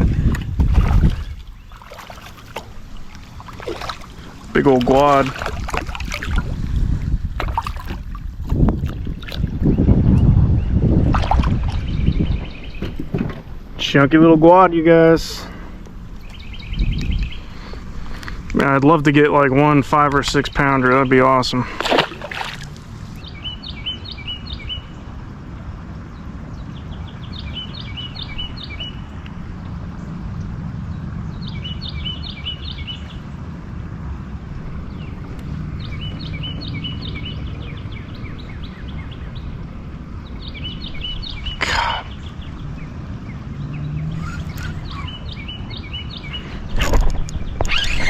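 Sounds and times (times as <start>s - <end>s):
low outdoor rumble: 0.0s - 48.0s
songbird singing high notes: 40.2s - 46.5s.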